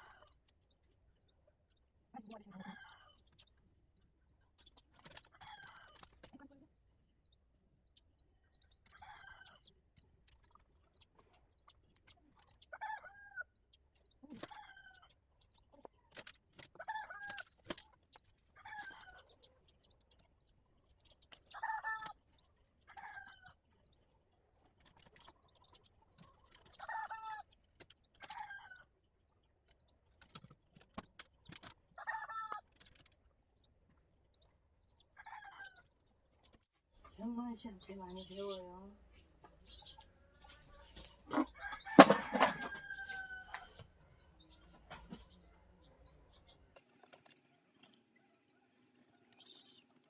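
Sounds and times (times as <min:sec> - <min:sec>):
chickens calling: 0:00.0 - 0:50.0.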